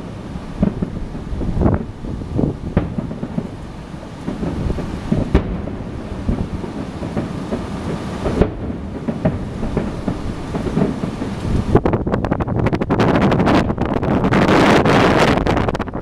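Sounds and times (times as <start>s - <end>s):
fireworks booming: 0.0s - 16.0s
wind buffeting microphone: 0.0s - 16.0s.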